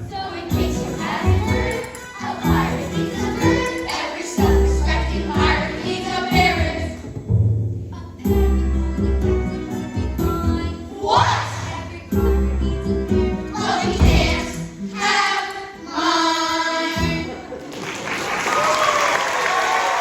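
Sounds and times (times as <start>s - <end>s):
group of voices singing: 0.0s - 7.0s, 11.0s - 12.5s, 13.5s - 17.5s
heavy low accompaniment: 6.6s - 14.9s.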